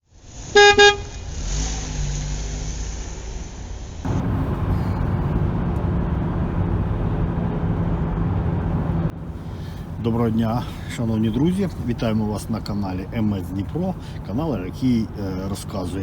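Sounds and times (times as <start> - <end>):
low road rumble: 0.0 - 16.0
car horn beeps: 0.6 - 1.1.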